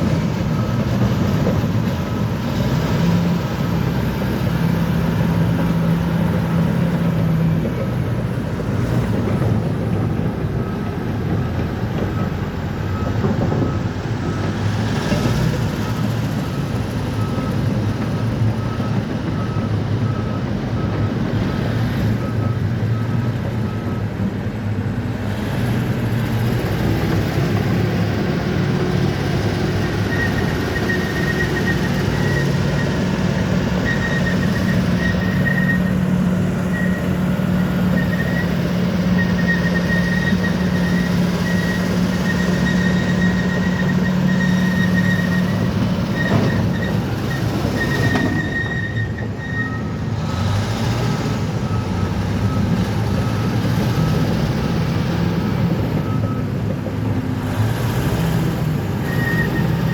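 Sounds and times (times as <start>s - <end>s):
diesel engine running: 0.0s - 59.9s
steel tracks squealing: 26.7s - 56.5s, 57.4s - 59.9s.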